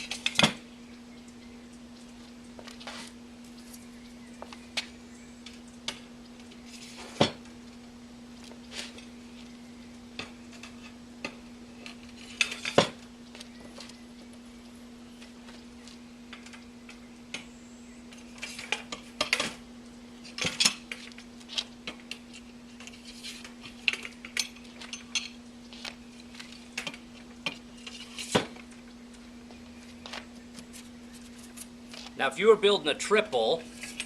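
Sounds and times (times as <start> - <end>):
metal parts clinking and scraping: 33.7 - 34.0.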